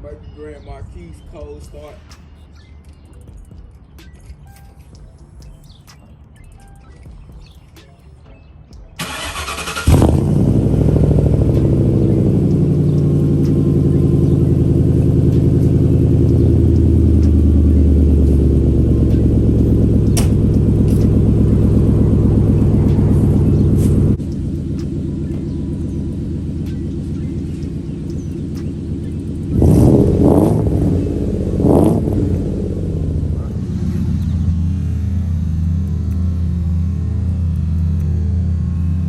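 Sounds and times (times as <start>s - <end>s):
starter motor cranking: 9.0s - 10.6s
car engine idling loud: 9.0s - 39.0s.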